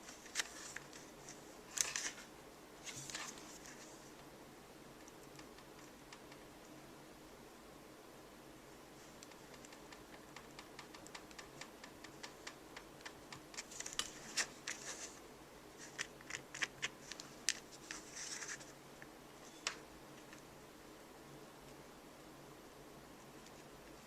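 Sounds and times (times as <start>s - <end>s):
scratchy scrapes: 15.8s - 18.8s.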